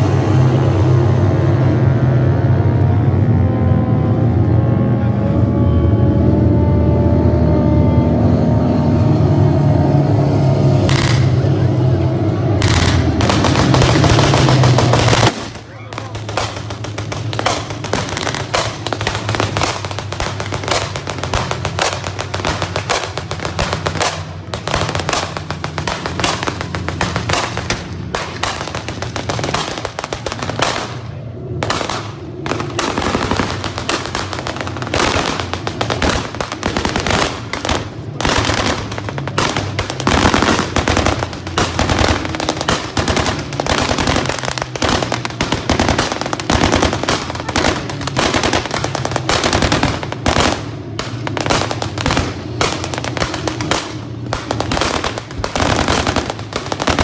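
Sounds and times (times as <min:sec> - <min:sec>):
rapid bangs and crackles of gunfire: 0:12.4 - 0:57.0.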